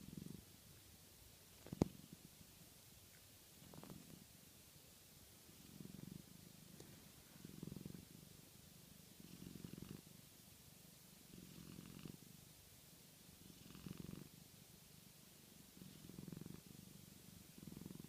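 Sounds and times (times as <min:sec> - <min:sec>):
small pet snoring faintly: 0:00.0 - 0:00.5, 0:03.6 - 0:04.4, 0:05.5 - 0:08.4, 0:09.2 - 0:10.2, 0:11.2 - 0:12.4, 0:13.4 - 0:14.6, 0:15.6 - 0:18.0.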